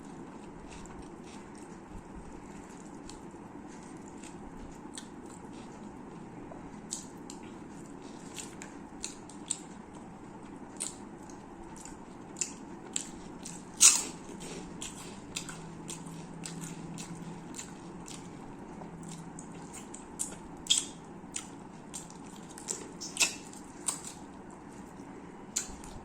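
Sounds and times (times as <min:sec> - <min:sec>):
person chewing: 0:00.0 - 0:26.0
wet mouth clicks: 0:20.2 - 0:24.0.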